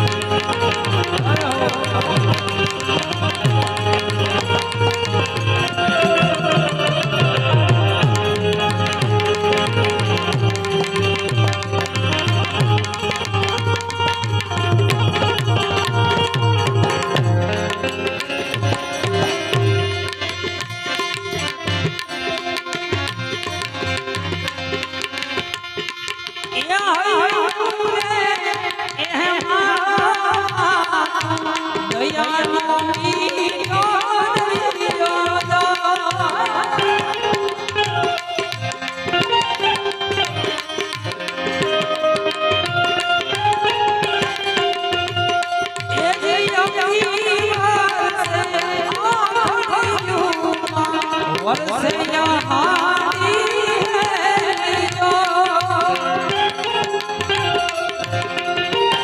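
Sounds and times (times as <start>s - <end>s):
ornamented melody line: 0.0s - 30.4s
tabla beat: 0.0s - 59.0s.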